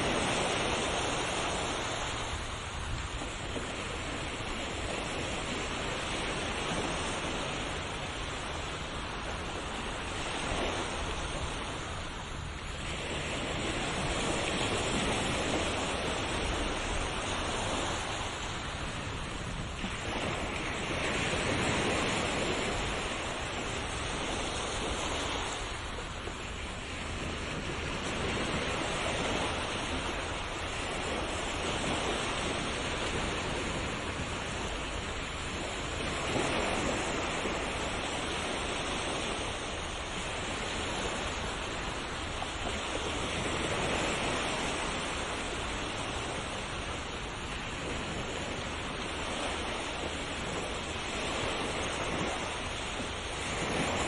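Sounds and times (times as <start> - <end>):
sea waves breaking on shore: 0.0 - 54.0.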